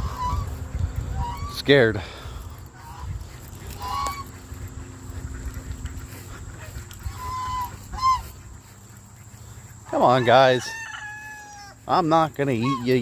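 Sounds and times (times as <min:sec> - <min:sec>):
low steady rumble: 0:00.0 - 0:09.9
fowl calling: 0:00.0 - 0:13.0.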